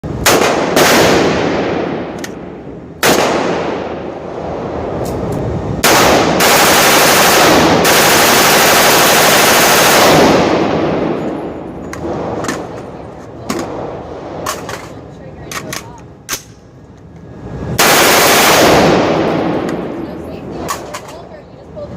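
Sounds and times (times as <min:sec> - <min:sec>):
rapid-fire rifle burst: 0:00.1 - 0:02.2, 0:03.0 - 0:04.3, 0:05.7 - 0:11.3, 0:17.7 - 0:20.0
rifle shots echoing: 0:00.1 - 0:05.0, 0:05.8 - 0:12.7, 0:17.8 - 0:21.0.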